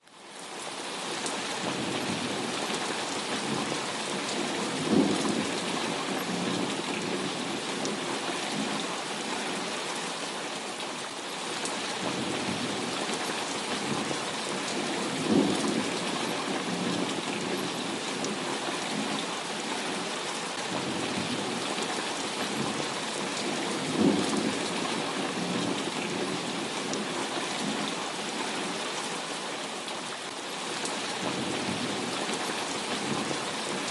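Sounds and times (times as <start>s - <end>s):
heavy rain: 0.0s - 33.9s
thunder rumbling: 23.4s - 26.6s.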